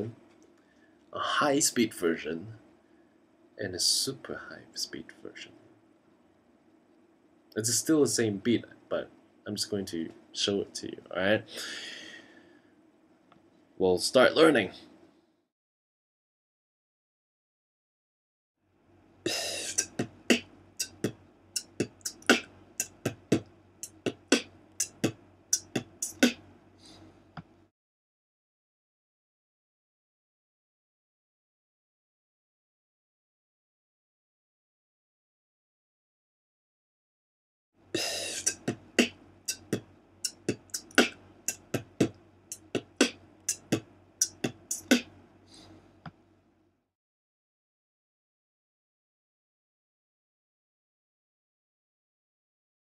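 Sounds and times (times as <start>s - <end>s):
beatboxing drum hits: 19.3s - 26.4s, 38.0s - 45.1s
mouth hissing sound: 19.3s - 26.4s, 38.0s - 41.8s.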